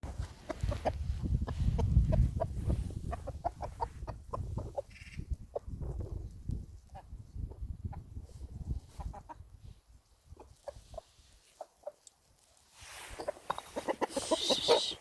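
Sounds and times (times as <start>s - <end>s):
chickens clucking: 0.1s - 12.3s, 13.0s - 15.0s
brief higher chicken call: 13.8s - 15.0s.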